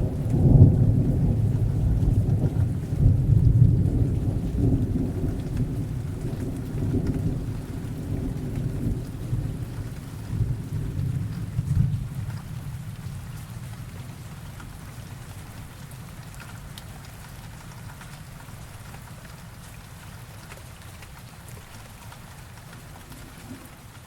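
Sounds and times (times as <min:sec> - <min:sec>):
thunder rumble: 0:00.0 - 0:13.4
steady rain falling: 0:00.0 - 0:24.0.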